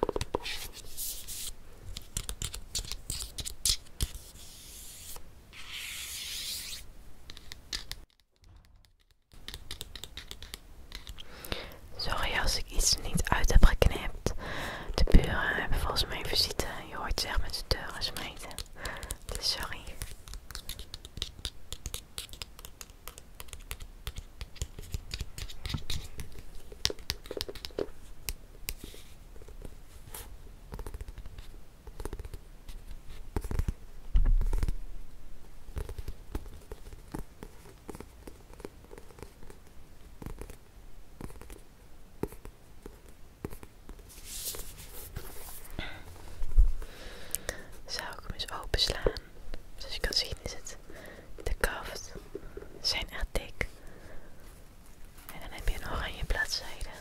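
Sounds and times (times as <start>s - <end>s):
scratching and tapping on book: 0.0s - 11.3s, 16.6s - 34.8s, 35.7s - 41.6s, 42.2s - 45.6s, 47.4s - 49.3s.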